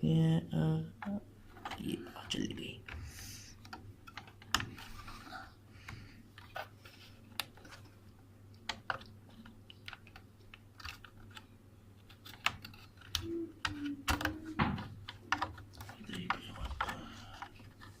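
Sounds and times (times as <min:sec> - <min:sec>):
plastic clicks and taps: 0:12.1 - 0:17.6.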